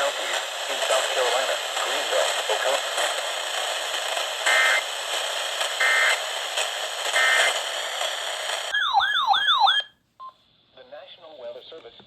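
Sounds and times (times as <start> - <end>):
radio static hiss: 0.0 - 8.7.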